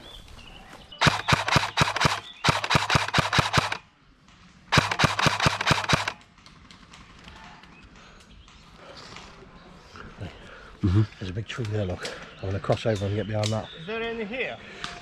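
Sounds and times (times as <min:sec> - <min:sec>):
airsoft rifle firing bursts: 0:01.0 - 0:03.9, 0:04.7 - 0:06.2.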